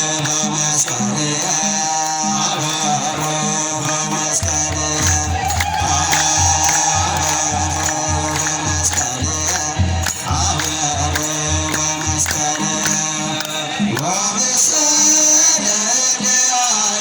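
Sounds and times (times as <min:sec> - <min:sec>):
men chanting together: 0:00.0 - 0:17.0
low drum beat: 0:04.4 - 0:13.4.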